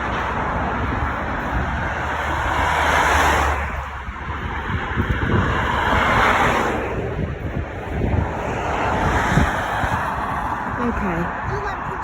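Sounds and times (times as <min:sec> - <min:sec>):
road traffic passing: 0:00.0 - 0:12.0
wind buffeting microphone: 0:00.0 - 0:12.0.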